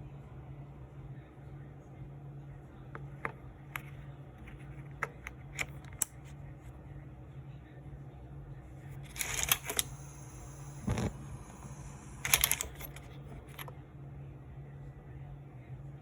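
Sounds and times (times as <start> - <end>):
steady low hum: 0.0 - 16.0
plastic parts rattling: 9.1 - 9.9, 12.2 - 13.7.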